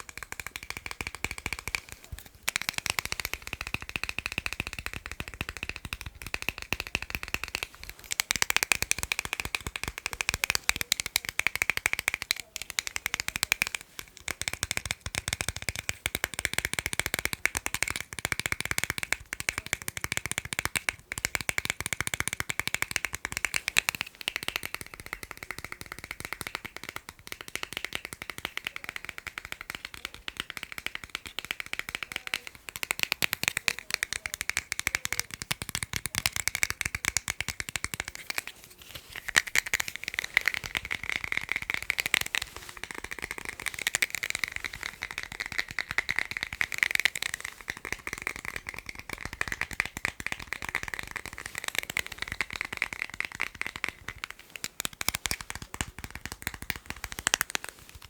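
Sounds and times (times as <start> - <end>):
fast tapping on hard object: 0.0 - 58.0.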